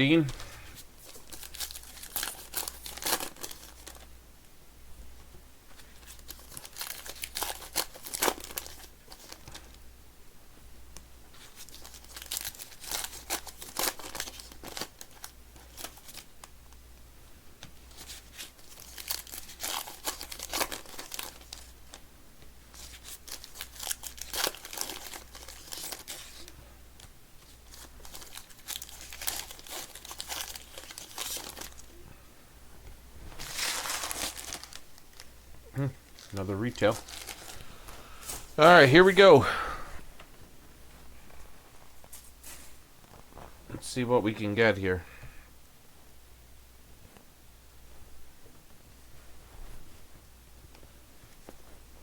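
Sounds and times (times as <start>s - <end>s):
plastic wrappers tearing and crinkling: 0.4s - 4.1s, 5.8s - 9.8s, 11.4s - 16.5s, 17.9s - 22.0s, 22.7s - 32.0s, 33.3s - 35.3s, 36.0s - 38.8s.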